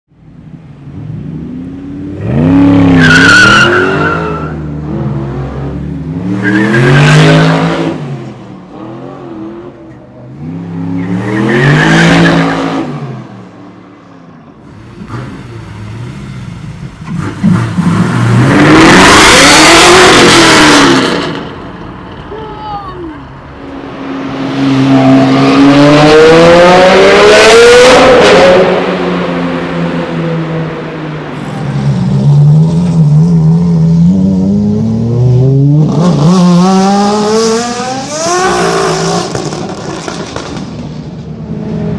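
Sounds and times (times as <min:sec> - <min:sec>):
car engine revving hard: 0:14.7 - 0:21.4, 0:24.6 - 0:29.2, 0:34.1 - 0:40.5.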